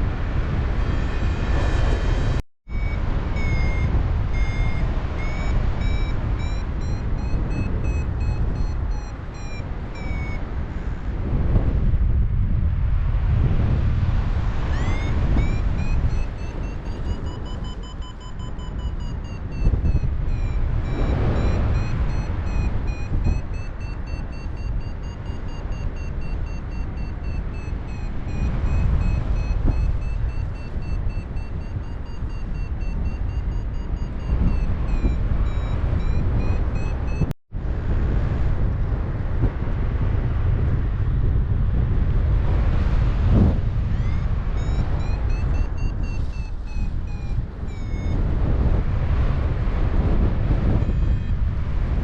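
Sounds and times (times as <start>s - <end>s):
wind rush on microphone: 0.0s - 52.0s
variometer beeping: 2.7s - 10.5s, 14.7s - 37.3s, 43.4s - 48.8s, 50.7s - 51.4s.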